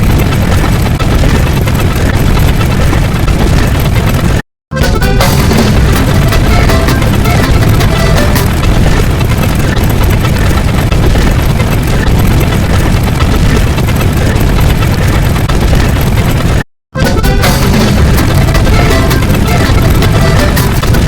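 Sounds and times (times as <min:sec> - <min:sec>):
distorted low rumble with harsh noise: 0:00.0 - 0:21.0.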